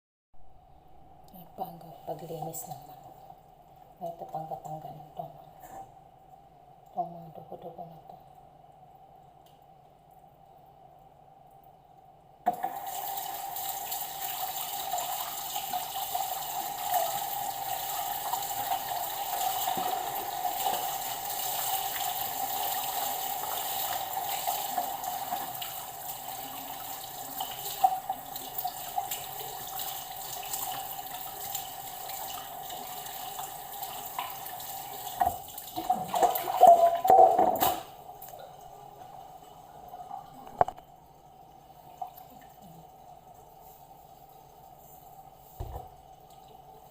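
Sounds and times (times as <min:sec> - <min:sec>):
tap water running into sink: 0:12.5 - 0:38.4, 0:45.6 - 0:46.6.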